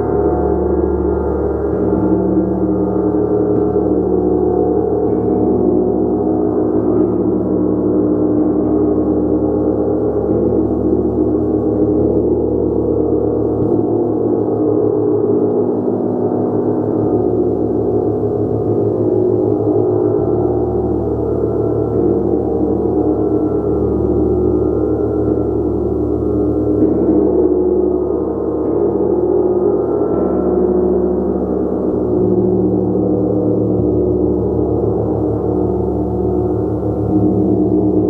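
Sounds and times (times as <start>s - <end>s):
large gong ringing: 0.0s - 38.0s.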